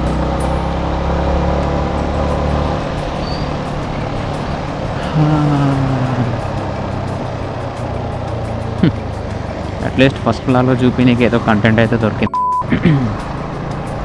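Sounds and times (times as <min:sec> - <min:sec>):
motorcycle engine hum: 0:00.0 - 0:14.0
wind and road noise: 0:00.0 - 0:14.0.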